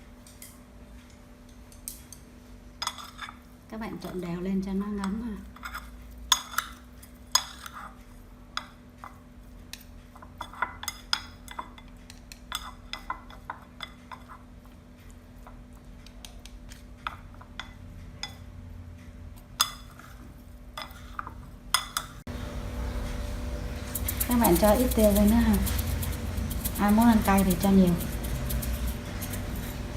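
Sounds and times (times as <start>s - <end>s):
utensil scraping a bowl: 23.7s - 29.9s.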